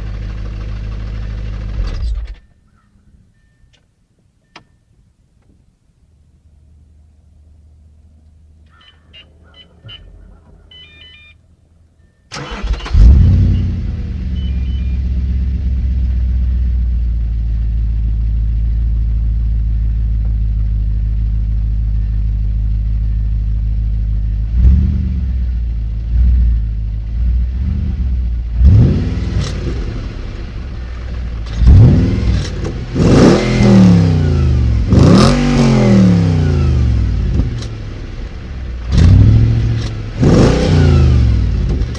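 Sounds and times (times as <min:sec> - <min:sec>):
car engine starting and idling: 0:00.0 - 0:08.8, 0:09.5 - 0:41.9
faint chime beeps: 0:03.3 - 0:03.8, 0:10.7 - 0:11.4
car engine revving hard: 0:12.4 - 0:14.4, 0:24.5 - 0:25.5, 0:27.4 - 0:37.7, 0:38.8 - 0:41.9.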